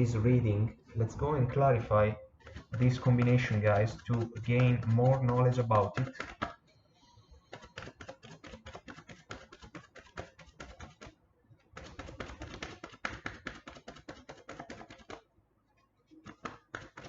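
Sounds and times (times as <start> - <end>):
cards being shuffled: 2.4 - 6.6, 7.4 - 15.2, 16.2 - 17.0.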